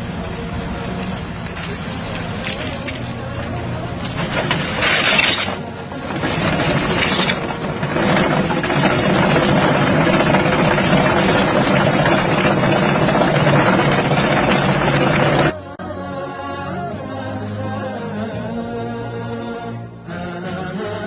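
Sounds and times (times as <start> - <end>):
excavator running and digging: 0.0 - 15.7.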